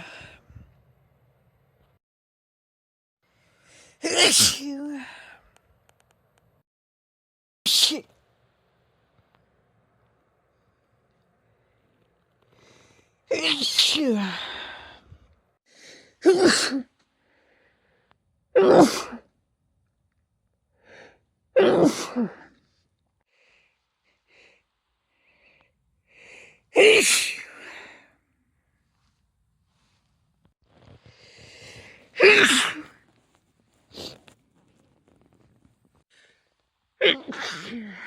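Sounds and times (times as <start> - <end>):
person sneezing: 4.0 - 5.1, 7.7 - 8.1, 16.2 - 16.9, 32.2 - 33.0, 37.0 - 38.0.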